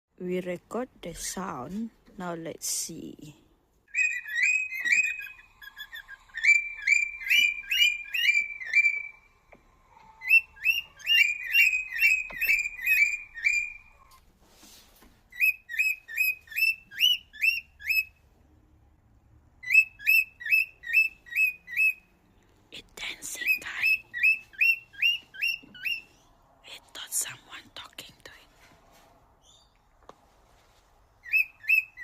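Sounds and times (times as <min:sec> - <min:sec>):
bird whistling song: 0:03.9 - 0:09.4, 0:10.2 - 0:14.0, 0:15.3 - 0:18.1, 0:19.6 - 0:22.1, 0:23.0 - 0:26.3, 0:31.2 - 0:32.0.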